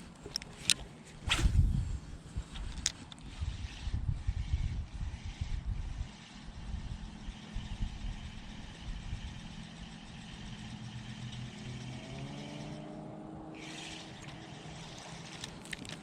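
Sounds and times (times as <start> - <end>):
engine running: 4.5 - 16.0.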